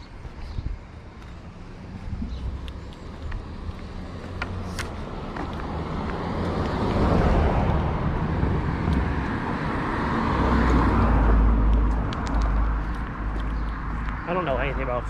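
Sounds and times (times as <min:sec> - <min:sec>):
road traffic rumble: 0:00.0 - 0:15.0.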